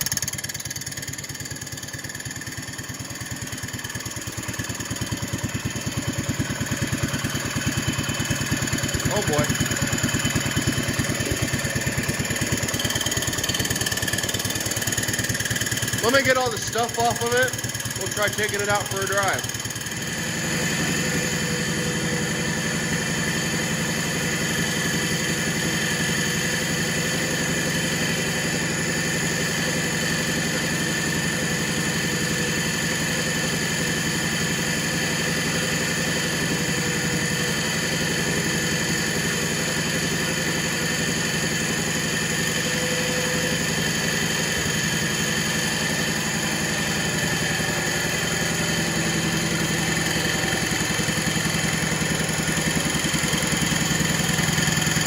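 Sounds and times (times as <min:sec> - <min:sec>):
garden tractor engine running: 0:00.0 - 0:55.0.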